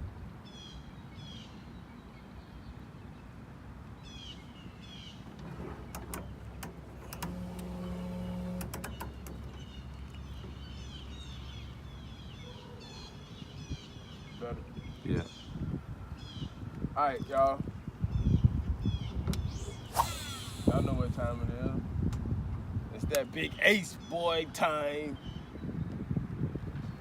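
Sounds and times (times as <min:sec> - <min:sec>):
small birds chirping: 0:00.5 - 0:21.2
steady mechanical hum: 0:04.9 - 0:12.2, 0:17.8 - 0:23.9
sharp clicks: 0:05.9 - 0:10.2.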